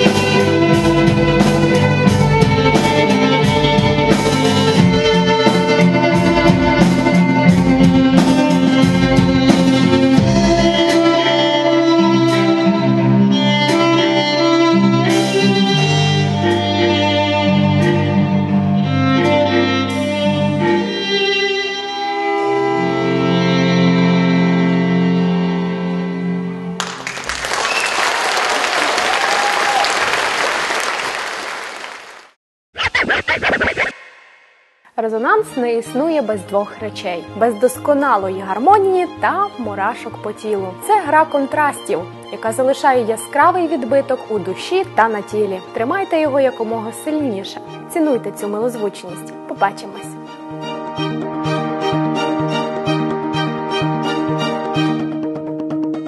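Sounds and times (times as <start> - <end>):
held string chords: 0.0 - 27.0, 35.0 - 56.0
violins playing: 0.0 - 27.4, 35.2 - 55.3
audience applause: 26.8 - 32.4.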